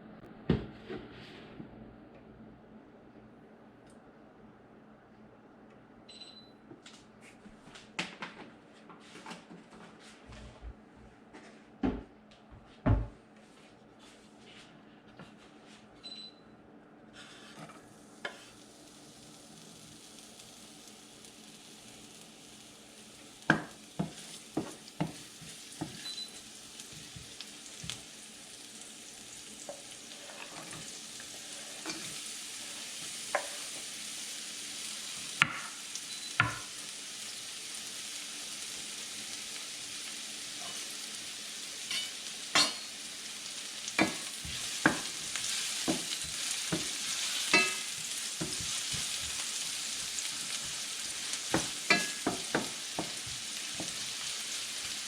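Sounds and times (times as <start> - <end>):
food sizzling in hot oil: 17.8 - 55.0
spatula clacking against pan: 51.5 - 54.0.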